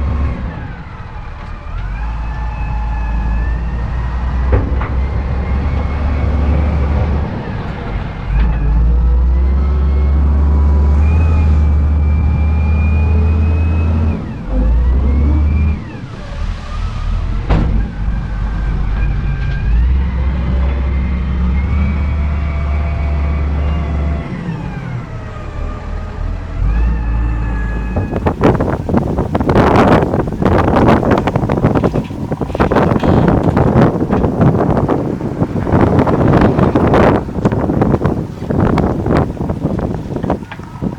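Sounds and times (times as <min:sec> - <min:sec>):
diesel engine working: 0:00.0 - 0:40.9
heavy low rumble: 0:00.0 - 0:40.9
crackling noise: 0:26.6 - 0:40.9.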